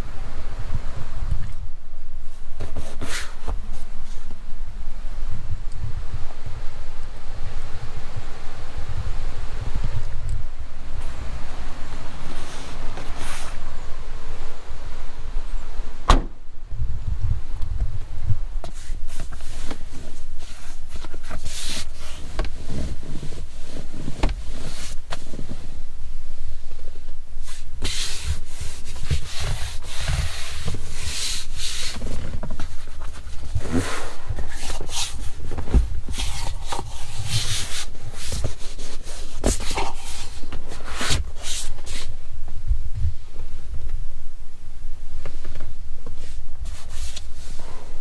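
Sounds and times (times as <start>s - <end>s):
car driving low rumble: 0.0s - 48.0s
rubbing and rustling near microphone: 2.2s - 4.5s, 10.9s - 13.7s, 17.0s - 43.8s, 45.2s - 48.0s.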